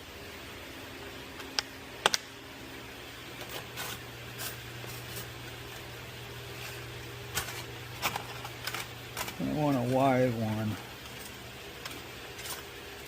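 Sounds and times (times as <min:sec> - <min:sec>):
steady low hum: 0:00.0 - 0:13.0
tools scraping and rustling: 0:03.4 - 0:05.5, 0:06.4 - 0:13.0.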